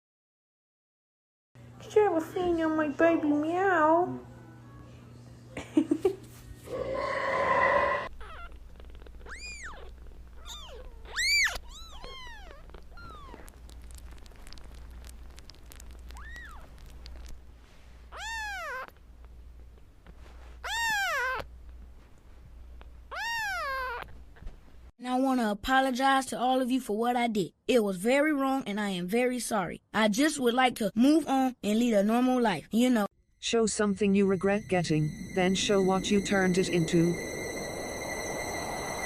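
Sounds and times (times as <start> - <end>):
cat meowing: 6.7 - 13.6, 16.1 - 16.9, 18.1 - 18.9, 20.6 - 21.5, 23.1 - 24.1
loud steady tone: 33.4 - 39.0.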